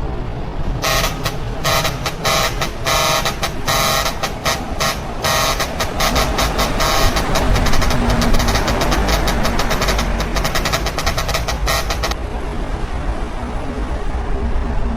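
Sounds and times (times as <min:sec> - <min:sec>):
truck engine running: 0:00.0 - 0:14.9
truck horn blowing in bursts: 0:00.8 - 0:12.2.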